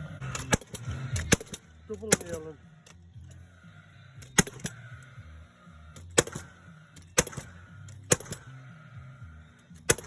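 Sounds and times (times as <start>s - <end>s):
low steady hum: 0.0s - 10.0s
nail gun firing: 0.2s - 2.4s, 4.3s - 4.8s, 6.0s - 8.6s.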